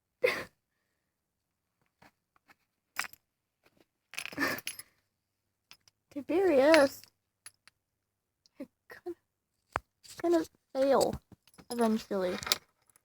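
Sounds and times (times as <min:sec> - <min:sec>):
objects clinking and rustling: 0:03.0 - 0:05.0, 0:10.1 - 0:13.0.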